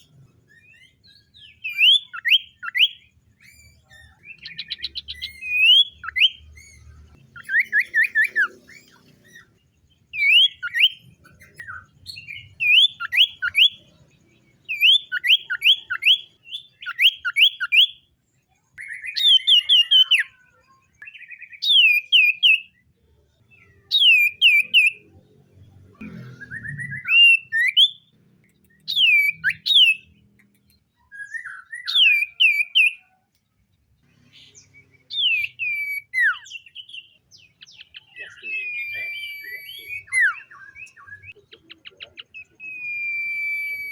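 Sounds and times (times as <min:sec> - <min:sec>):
bird whistling descending notes: 0:42.6 - 0:43.9.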